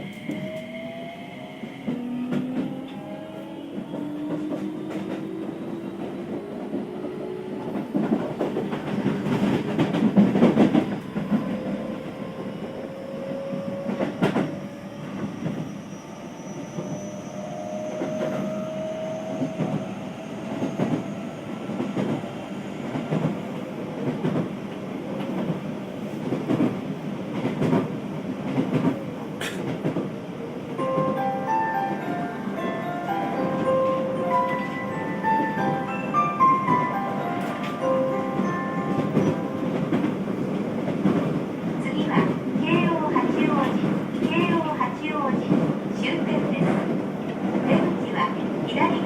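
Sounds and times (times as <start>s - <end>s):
train wheels clacking: 28.5s - 30.1s.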